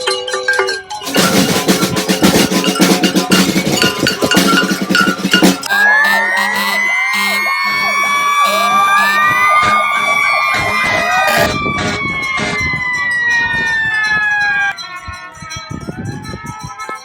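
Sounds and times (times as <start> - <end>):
sharp metallic clanks: 0.0 - 5.7
emergency sirens wailing: 1.0 - 17.0.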